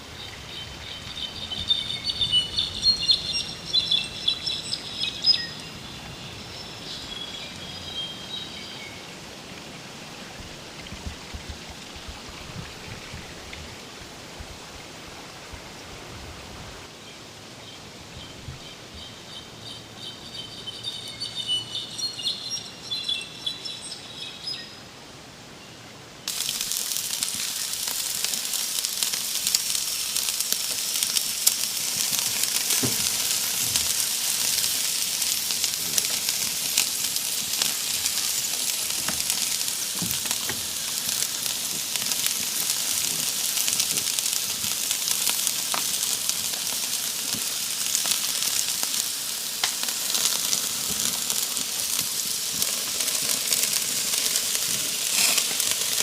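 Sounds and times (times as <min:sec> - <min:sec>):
sausage sizzling with pops: 0:00.0 - 0:08.7, 0:26.3 - 0:56.0
forest birds chirping: 0:00.0 - 0:13.5, 0:16.9 - 0:26.1.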